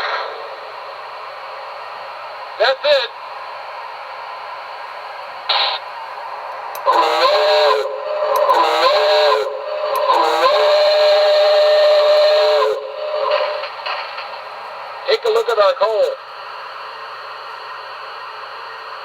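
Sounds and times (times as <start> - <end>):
steam whistle blowing: 6.8 - 13.7.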